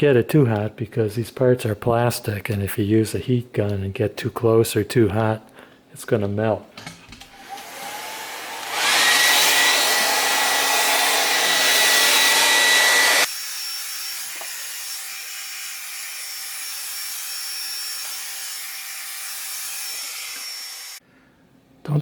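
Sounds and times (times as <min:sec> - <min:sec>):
hair dryer running: 0:07.4 - 0:13.4.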